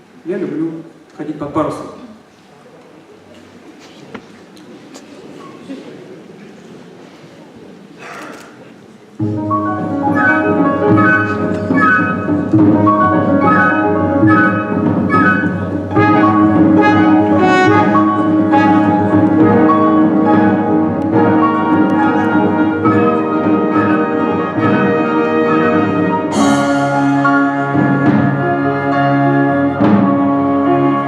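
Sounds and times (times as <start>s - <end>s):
symphony orchestra playing: 9.2s - 31.0s.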